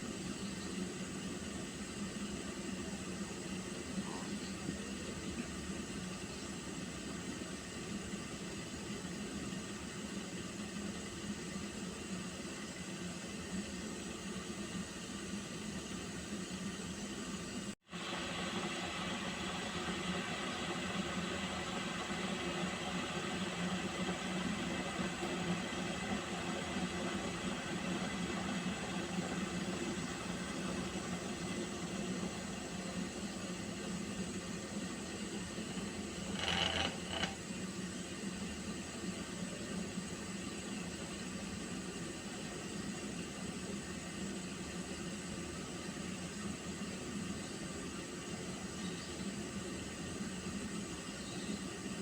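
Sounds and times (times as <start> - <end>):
water heating in pot hissing: 0.0 - 52.0
pot rattling: 36.3 - 37.4.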